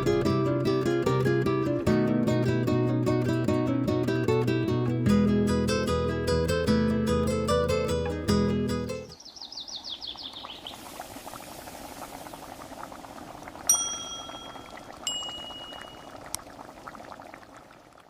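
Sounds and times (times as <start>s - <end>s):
faint crackling hiss: 7.1s - 18.0s
ringing metallic clinks: 13.7s - 16.0s.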